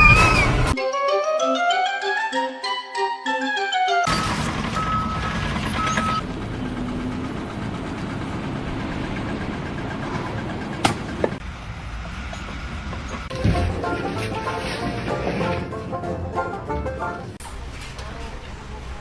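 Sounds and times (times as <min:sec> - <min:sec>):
heavy machinery rumbling: 0:04.1 - 0:19.0.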